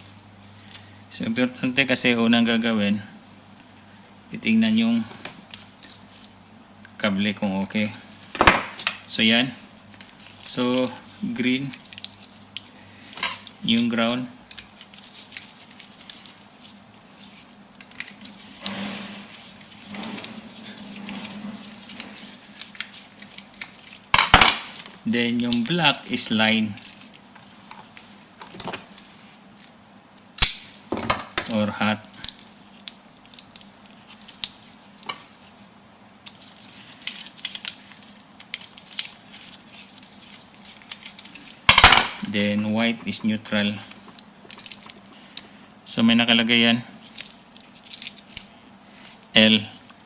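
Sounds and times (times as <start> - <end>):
low hum with noisy rush: 0.0 - 50.0
clicks and rustles of cable handling: 21.6 - 29.8, 31.0 - 35.5, 36.2 - 42.4, 43.0 - 45.8, 47.0 - 49.2.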